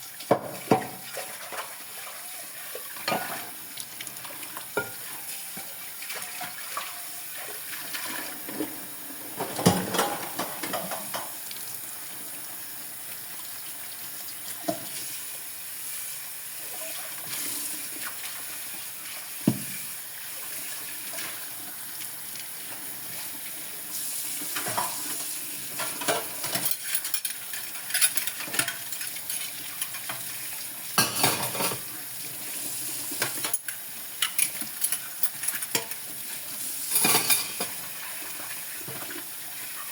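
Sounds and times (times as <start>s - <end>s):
running water at a sink: 0.0s - 39.9s
dishes clinking: 9.4s - 11.3s, 31.0s - 31.8s, 36.9s - 37.8s.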